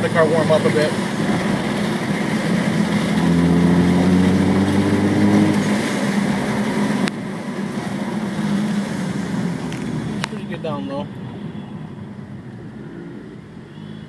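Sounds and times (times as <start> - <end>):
car engine accelerating: 0.0 - 10.4.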